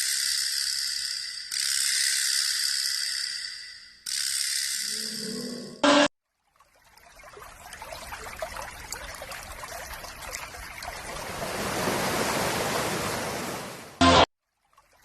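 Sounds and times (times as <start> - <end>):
water trickling and splashing: 6.2 - 15.0.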